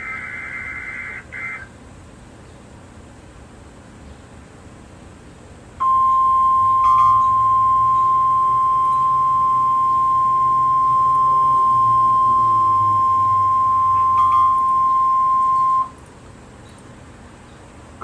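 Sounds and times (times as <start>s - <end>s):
faint radio hiss: 0.0s - 5.8s
high-pitched alarm tone: 5.8s - 16.0s.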